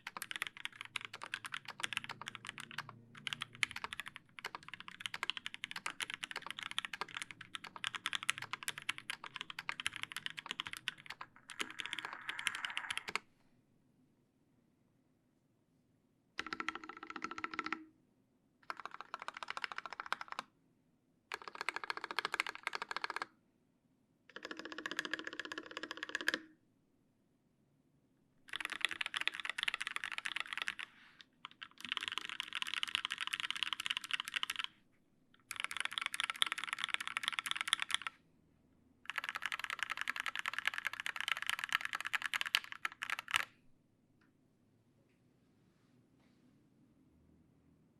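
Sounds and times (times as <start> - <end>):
mechanical keyboard typing: 0.0 - 13.2, 16.4 - 17.9, 18.6 - 20.5, 21.3 - 23.3, 24.3 - 26.5, 28.5 - 34.7, 35.4 - 38.2, 39.1 - 43.5.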